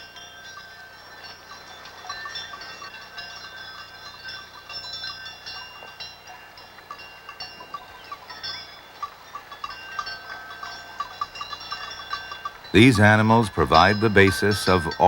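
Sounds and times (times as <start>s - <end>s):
cattle bells clinking: 0.0s - 15.0s.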